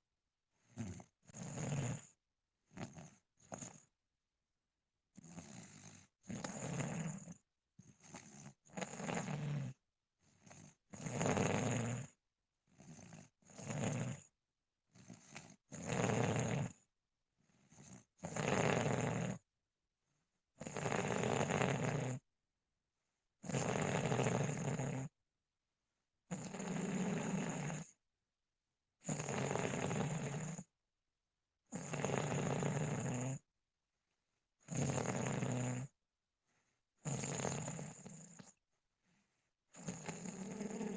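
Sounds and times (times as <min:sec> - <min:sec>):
person snoring: 0:00.6 - 0:03.9, 0:05.2 - 0:14.3, 0:14.9 - 0:16.8, 0:17.5 - 0:19.4, 0:20.6 - 0:22.2, 0:23.4 - 0:25.1, 0:26.3 - 0:28.0, 0:29.0 - 0:30.7, 0:31.7 - 0:33.4, 0:34.7 - 0:36.0, 0:37.0 - 0:38.6, 0:39.7 - 0:40.9.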